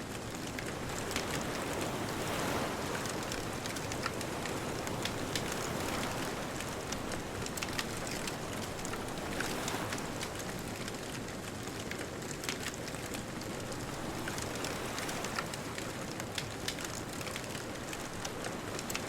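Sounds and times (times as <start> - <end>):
distant ocean surf: 0.8 - 11.2
bonfire crackling and popping: 3.0 - 19.0.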